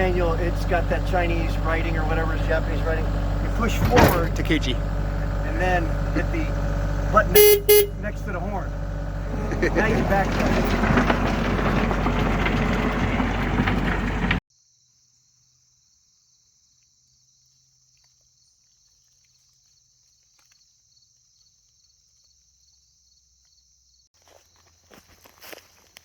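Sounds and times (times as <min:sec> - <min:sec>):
diesel engine running: 0:00.0 - 0:14.4
insect trill: 0:14.5 - 0:26.0.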